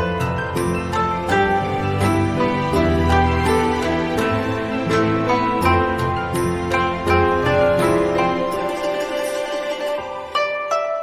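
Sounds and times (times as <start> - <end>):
soft plucked notes: 0.0 - 11.0.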